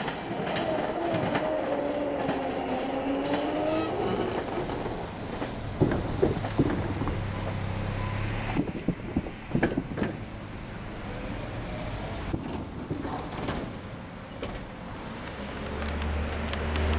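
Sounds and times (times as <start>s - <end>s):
wheels clacking over rail joints: 0.0s - 7.7s, 8.5s - 10.4s, 12.2s - 16.9s
train running over rails: 0.0s - 8.0s, 12.0s - 16.9s.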